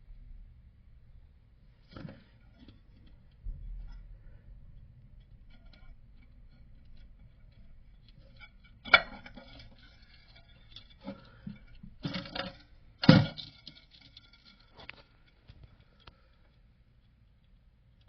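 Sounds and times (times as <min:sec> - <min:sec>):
hard parts clinking in toilet tank: 0:05.5 - 0:16.2.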